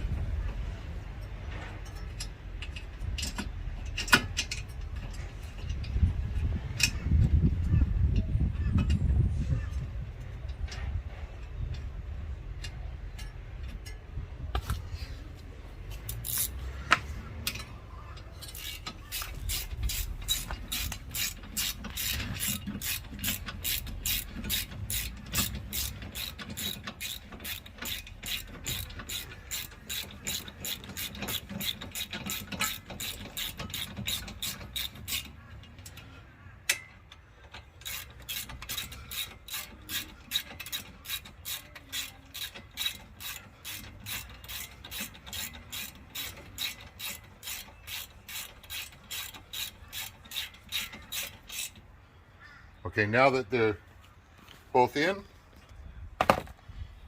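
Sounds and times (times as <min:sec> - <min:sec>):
socket ratchet clicking: 0:18.4 - 0:35.4, 0:37.8 - 0:51.8.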